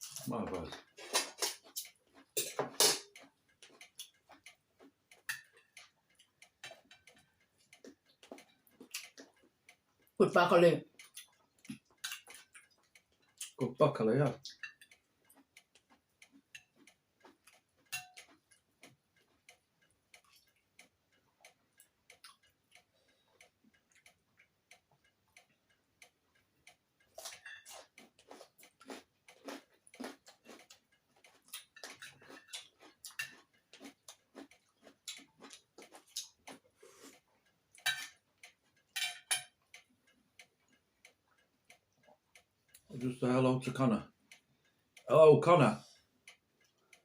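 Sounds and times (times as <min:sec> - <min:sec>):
person chewing food: 0:00.0 - 0:10.2, 0:10.9 - 0:13.6, 0:14.3 - 0:43.0, 0:45.8 - 0:47.0.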